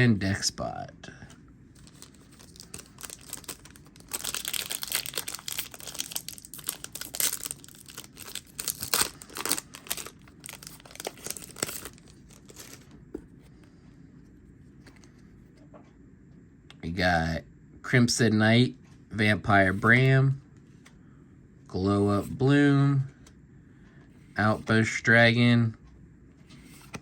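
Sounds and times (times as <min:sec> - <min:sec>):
foil wrapper tearing and crinkling: 0:01.8 - 0:12.9.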